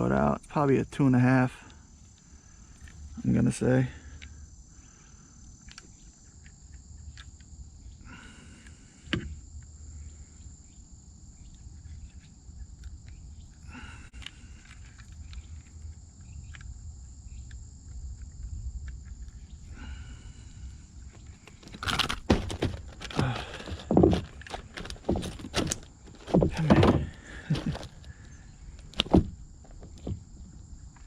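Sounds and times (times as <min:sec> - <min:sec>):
high-pitched insect chorus: 0:00.0 - 0:31.0
handling clicks and rustling: 0:21.0 - 0:30.2.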